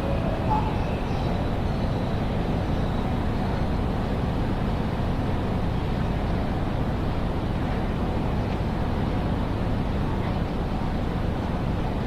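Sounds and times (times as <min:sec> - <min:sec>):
railway station hall rumble: 0:00.0 - 0:12.0.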